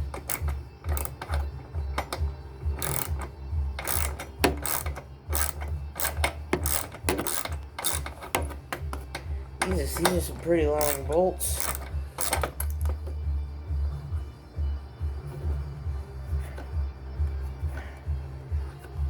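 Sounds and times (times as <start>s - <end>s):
ratchet wrench clicking: 0.0s - 13.0s
steady low hum: 0.0s - 19.0s.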